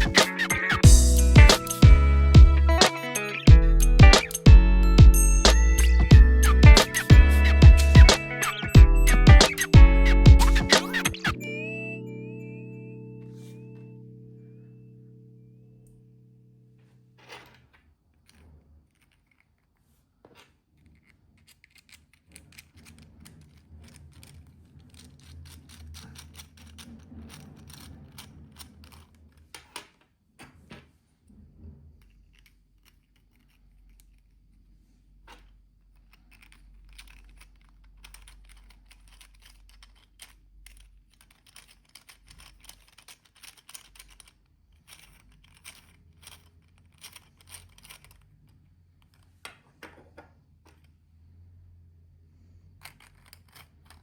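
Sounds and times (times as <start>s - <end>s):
low hum: 0.8s - 2.8s
plastic parts clicking and clattering: 17.2s - 30.9s, 32.0s - 34.4s, 35.2s - 51.0s, 52.8s - 54.0s.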